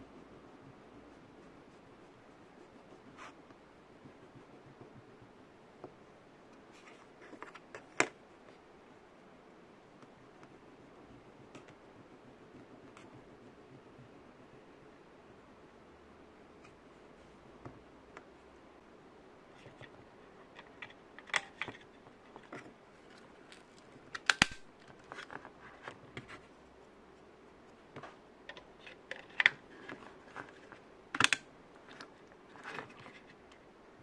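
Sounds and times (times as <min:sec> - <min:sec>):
computer hardware clicks and taps: 0:28.0 - 0:32.1.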